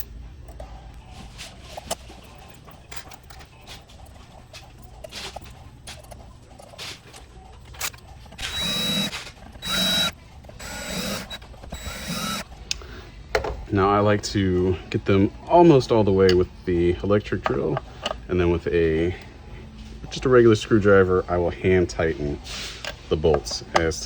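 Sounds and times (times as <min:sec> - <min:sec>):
electric drill driving screws: 0:08.4 - 0:12.5.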